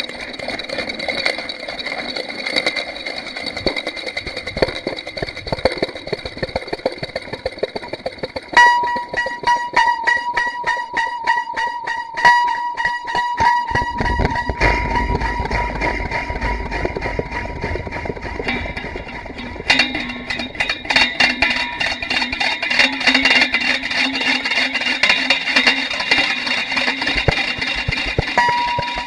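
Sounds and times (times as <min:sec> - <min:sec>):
eerie noise wash: 0:00.0 - 0:22.3
rapid clicks and rattles: 0:00.0 - 0:29.0
steady low tone: 0:08.5 - 0:22.0.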